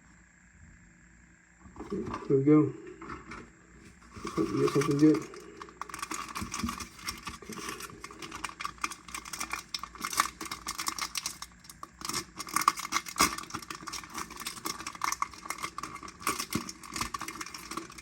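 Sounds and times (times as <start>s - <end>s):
cards being handled: 3.9s - 18.0s
card pack wrapper tearing: 4.1s - 18.0s.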